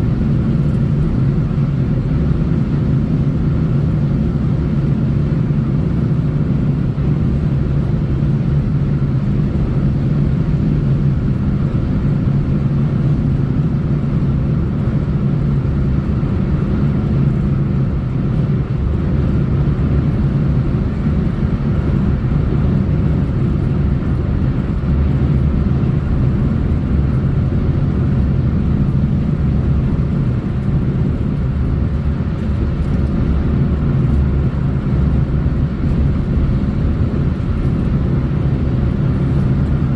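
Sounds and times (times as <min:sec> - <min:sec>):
car driving on road: 0:00.0 - 0:39.9.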